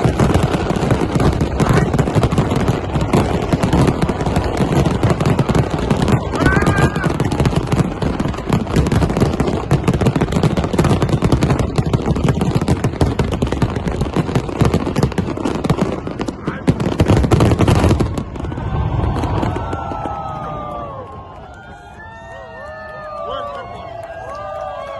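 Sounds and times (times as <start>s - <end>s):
crowd voices: 0.0s - 14.2s, 14.8s - 24.9s
fireworks bangs and crackles: 0.0s - 24.9s.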